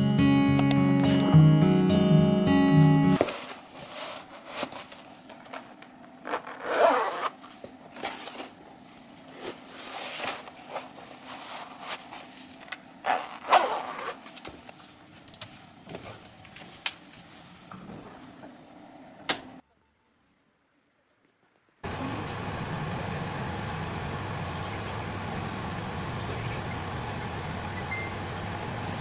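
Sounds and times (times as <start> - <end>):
guitar music: 0.0 - 3.2.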